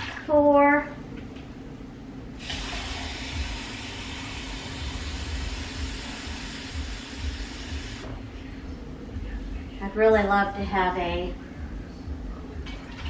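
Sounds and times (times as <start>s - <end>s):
tap water running into cup: 2.4s - 8.0s.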